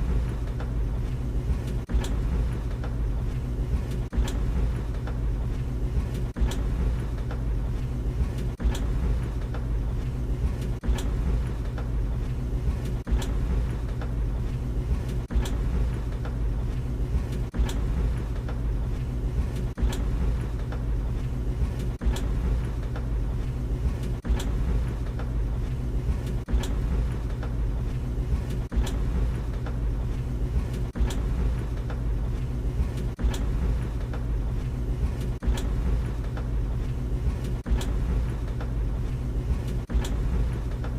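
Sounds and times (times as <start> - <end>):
tumble dryer humming: 0.0 - 40.9
dryer knocking: 3.7 - 16.6, 17.2 - 23.2, 23.8 - 27.6, 28.3 - 32.1, 32.8 - 34.3, 35.0 - 36.6, 39.5 - 40.9.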